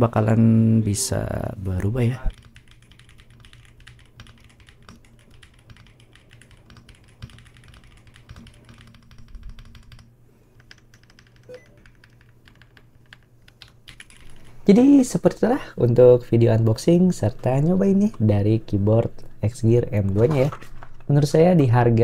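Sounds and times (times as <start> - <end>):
mechanical keyboard typing: 2.3 - 14.5.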